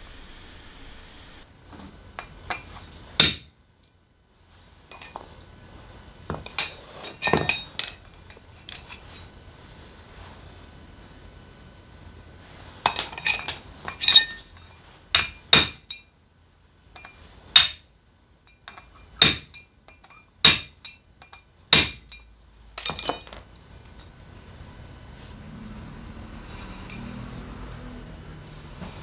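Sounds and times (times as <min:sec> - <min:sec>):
metallic clinks of tools: 0:02.2 - 0:03.4, 0:04.9 - 0:05.2, 0:06.3 - 0:09.3, 0:12.9 - 0:16.0, 0:17.0 - 0:17.8, 0:18.5 - 0:24.2, 0:26.5 - 0:27.5.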